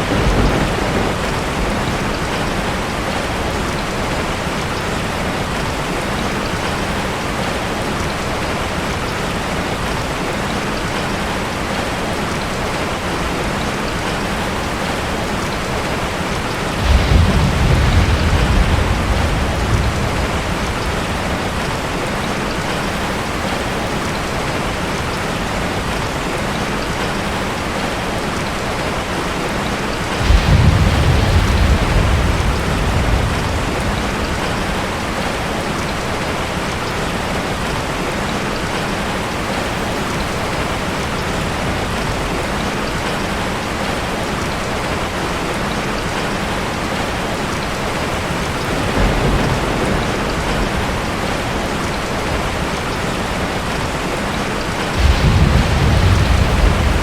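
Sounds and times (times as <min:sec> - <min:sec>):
thunder rumbling: 0:00.0 - 0:07.3, 0:13.0 - 0:24.7, 0:30.1 - 0:36.6, 0:47.9 - 0:57.0
heavy rain: 0:00.0 - 0:57.0.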